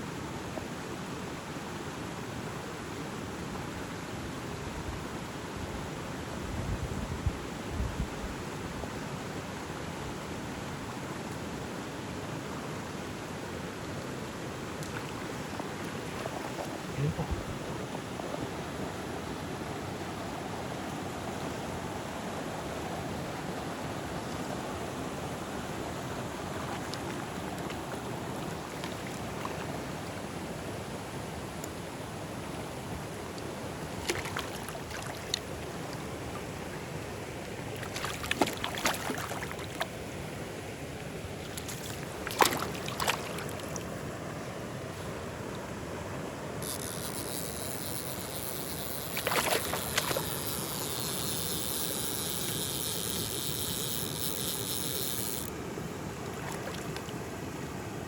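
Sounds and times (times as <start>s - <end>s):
stream water rushing: 8.3s - 58.0s
splashes: 34.0s - 35.5s, 37.8s - 40.0s, 41.4s - 43.9s, 48.8s - 51.2s, 56.3s - 57.2s.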